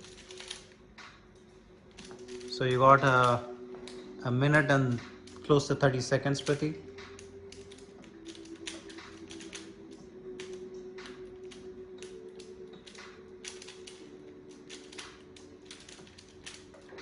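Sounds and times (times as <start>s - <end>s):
puzzle cube clicking: 0.0s - 0.7s, 6.3s - 16.8s
faint steady hum: 0.0s - 17.0s.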